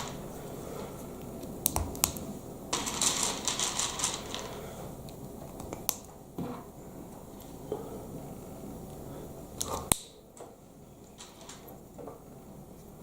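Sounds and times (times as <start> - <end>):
plastic pieces clattering: 2.0 - 4.7
plastic pieces clicking: 2.8 - 6.1.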